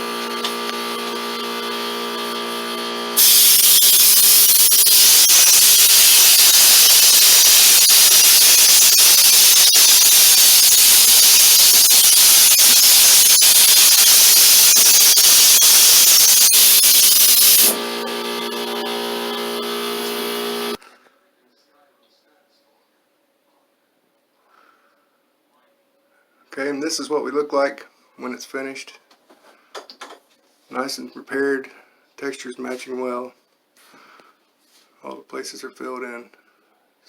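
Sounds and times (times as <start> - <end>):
machine hum: 0.0 - 20.8
compressed air spray hiss: 3.2 - 17.8.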